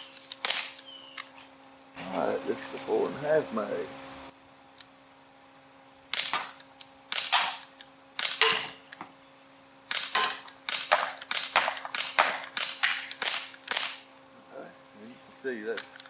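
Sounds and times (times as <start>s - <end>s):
pellet pistol shots: 0.4s - 0.8s, 6.1s - 8.8s, 9.9s - 14.1s.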